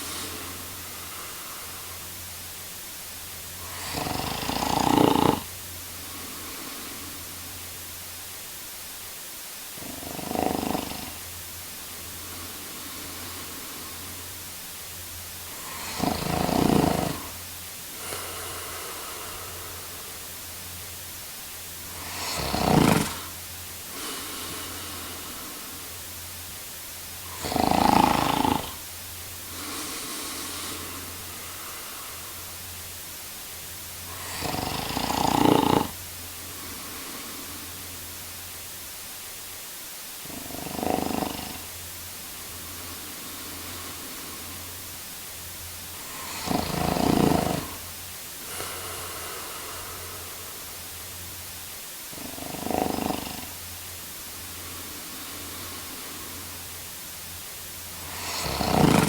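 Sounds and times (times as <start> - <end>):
man snoring: 0.0 - 2.2, 3.6 - 7.6, 9.8 - 11.4, 12.0 - 14.5, 15.4 - 20.5, 21.8 - 26.0, 27.2 - 32.6, 34.0 - 38.0, 40.2 - 41.8, 42.4 - 45.0, 45.9 - 50.9, 52.1 - 53.6, 54.3 - 56.8, 57.8 - 59.0
faint breaths: 0.0 - 59.0
steady hiss: 0.0 - 59.0.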